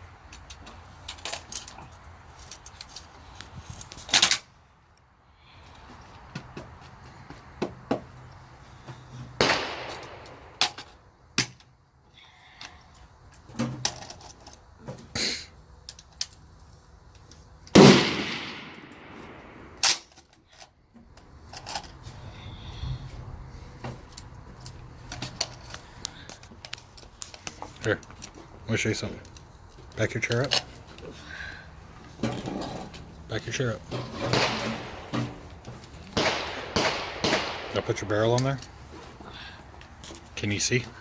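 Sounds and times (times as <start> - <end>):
rifle shots: 9.4 - 10.6, 17.8 - 20.0, 34.2 - 35.4, 36.1 - 38.3.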